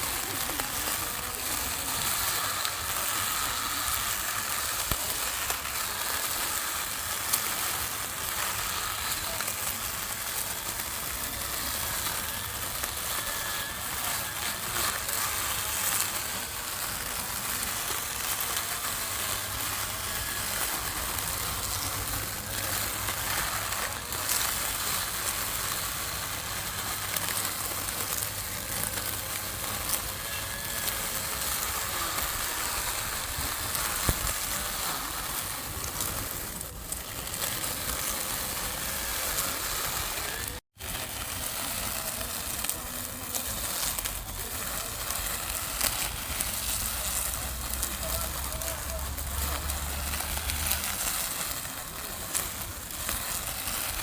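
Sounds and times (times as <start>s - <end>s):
lawn mower cutting grass: 0.0s - 54.0s.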